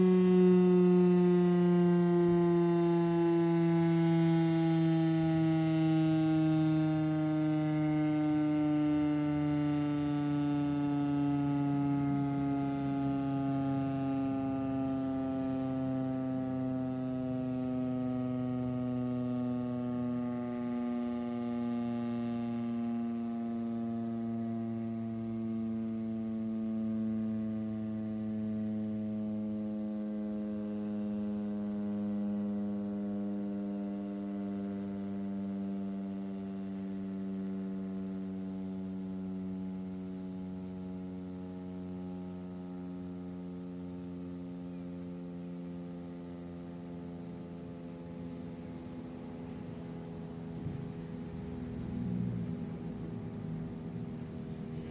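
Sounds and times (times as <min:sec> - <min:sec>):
mechanical siren winding down: 0:00.0 - 0:24.4, 0:46.4 - 0:54.9.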